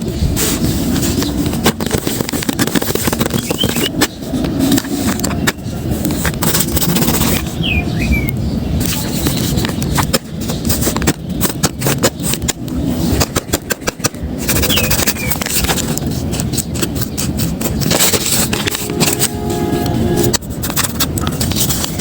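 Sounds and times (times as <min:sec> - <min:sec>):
paper crinkling and rustling: 0:13.2 - 0:19.4, 0:20.2 - 0:22.0.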